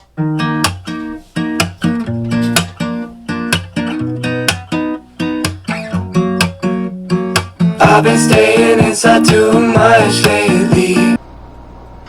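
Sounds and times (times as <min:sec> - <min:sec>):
strummed guitar chords: 0:00.0 - 0:11.2.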